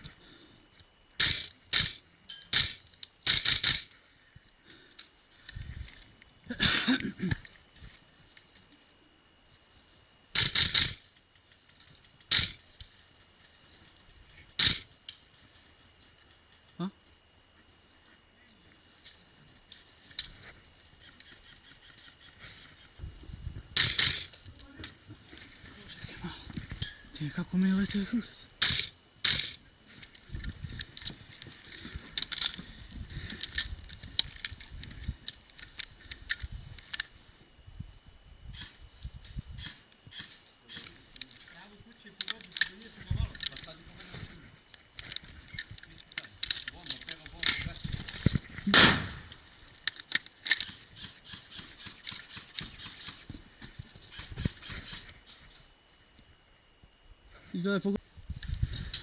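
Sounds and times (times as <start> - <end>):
airsoft rifle bursts: 1.2 - 3.9, 10.3 - 11.0.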